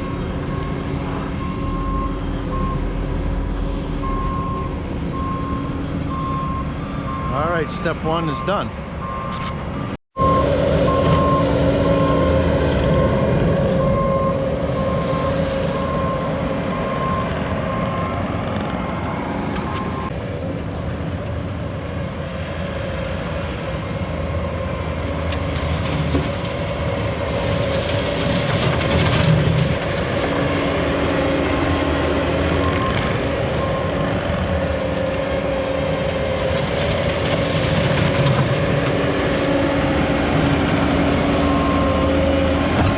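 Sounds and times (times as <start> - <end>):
reversing alarm beeping: 0.0 - 3.0, 4.0 - 18.2, 32.6 - 34.1, 41.4 - 42.5
heavy machine engine running: 0.0 - 42.9.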